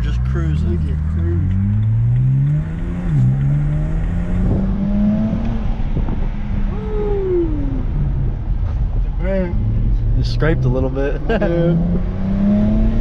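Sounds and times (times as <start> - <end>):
car engine running: 0.0 - 12.8.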